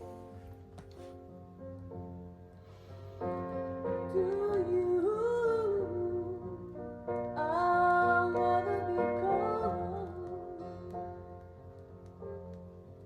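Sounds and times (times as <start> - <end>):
woman singing: 4.0 - 11.2.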